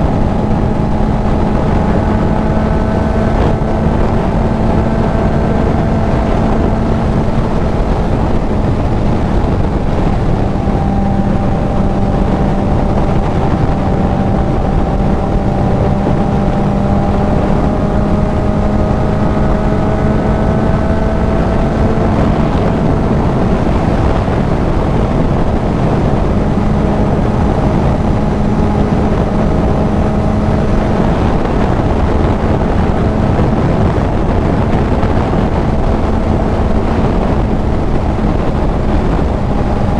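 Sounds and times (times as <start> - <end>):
motorcycle engine cruising: 0.0 - 39.9
wind rushing over microphone: 0.0 - 39.9.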